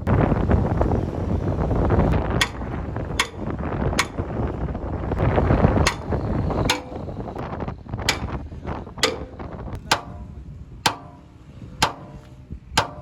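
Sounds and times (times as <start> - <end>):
low rumble of workshop machinery: 0.0 - 13.0
sharp metal knocks: 2.1 - 4.5, 5.8 - 7.4, 8.0 - 13.0.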